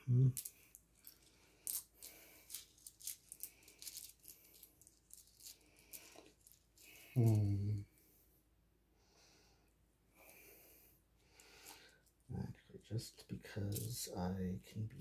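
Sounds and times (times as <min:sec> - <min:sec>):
crystals clicking and rattling: 0:00.0 - 0:07.8, 0:13.7 - 0:13.9.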